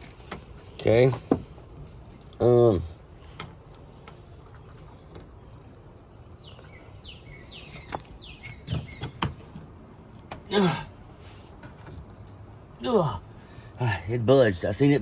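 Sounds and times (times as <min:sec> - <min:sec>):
bird singing falling chirps: 0:06.3 - 0:09.6.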